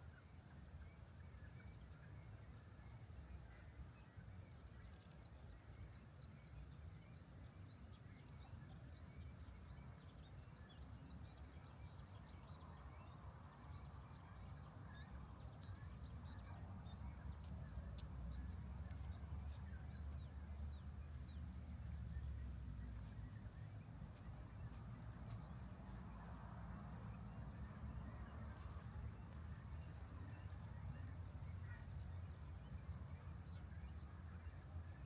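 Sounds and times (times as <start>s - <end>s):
faint birds chirping: 7.7s - 35.0s.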